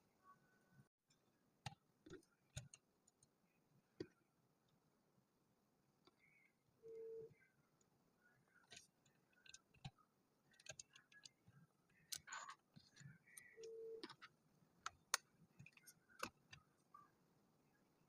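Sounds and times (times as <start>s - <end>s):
brief steady tone: 6.2s - 7.5s.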